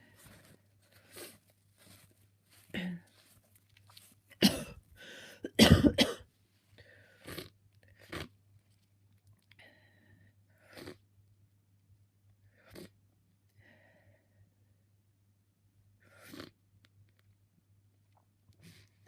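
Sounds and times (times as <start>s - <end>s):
person sneezing: 4.4s - 4.8s, 5.4s - 6.2s
gasping breath: 5.0s - 5.5s.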